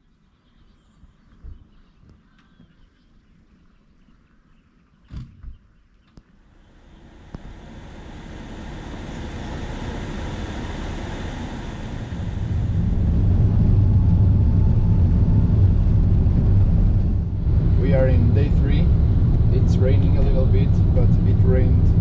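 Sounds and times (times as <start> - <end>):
vehicle engine rumbling: 6.5 - 22.0.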